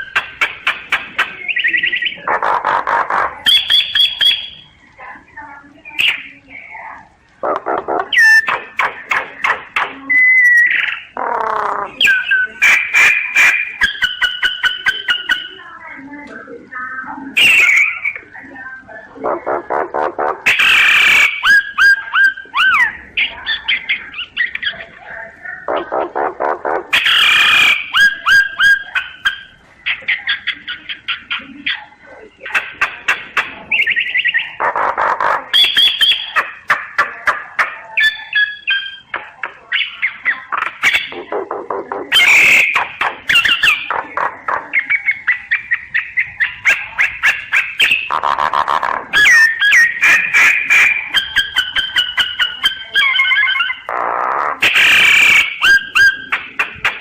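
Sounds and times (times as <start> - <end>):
bird singing: 0.0 - 4.8, 7.4 - 16.0, 17.1 - 56.9
harsh grating bird calls: 0.0 - 15.9, 16.8 - 57.0
bird singing clicks and whistles: 3.5 - 4.6.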